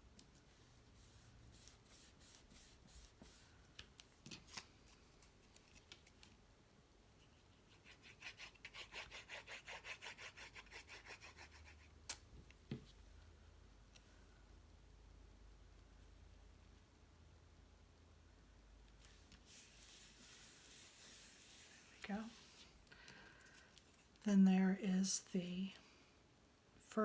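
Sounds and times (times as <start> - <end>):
hand rubbing on paper: 19.1 - 22.8.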